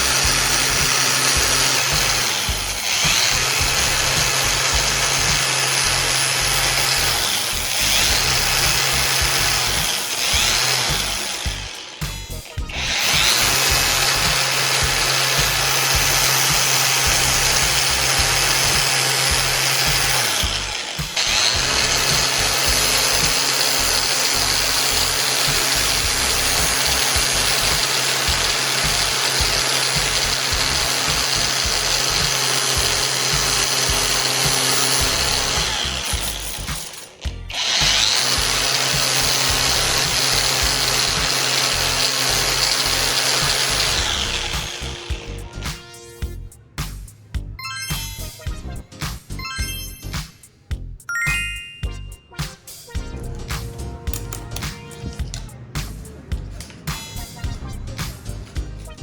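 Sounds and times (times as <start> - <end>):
electric power tool whining: 0.0 - 45.6.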